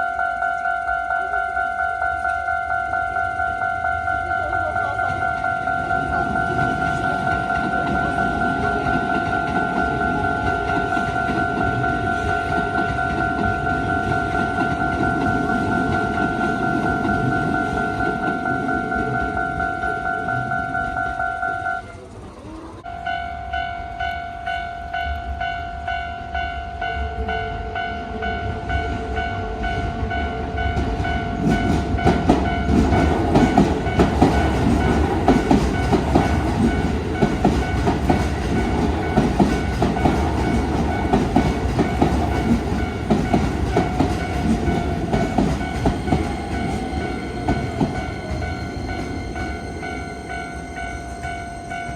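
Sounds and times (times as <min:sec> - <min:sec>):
level-crossing warning bell: 0:00.0 - 0:51.9
train wheels clattering over rails: 0:04.8 - 0:21.8, 0:30.7 - 0:51.9.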